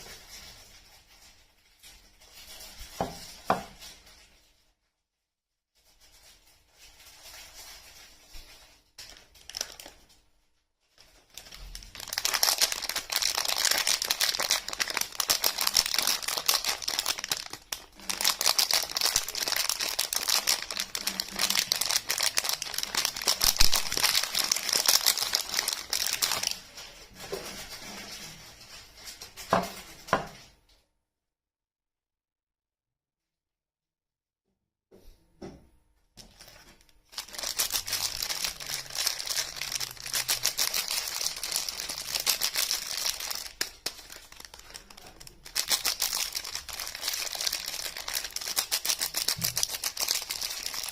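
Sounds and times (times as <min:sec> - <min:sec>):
wrapper crinkling and tearing: 0:05.9 - 0:30.1, 0:36.2 - 0:50.9.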